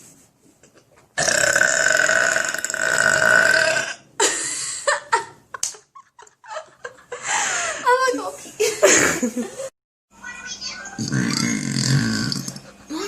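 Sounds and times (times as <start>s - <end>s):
girl burping: 11.0s - 12.5s.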